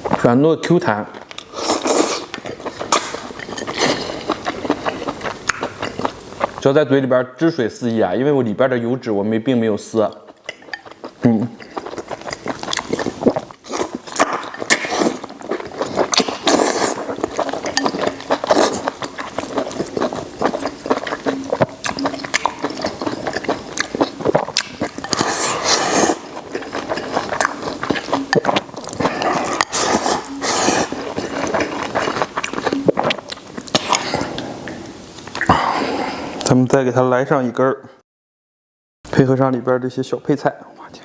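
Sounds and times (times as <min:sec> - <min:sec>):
close-up chewing: 0:00.9 - 0:06.6, 0:10.1 - 0:35.6.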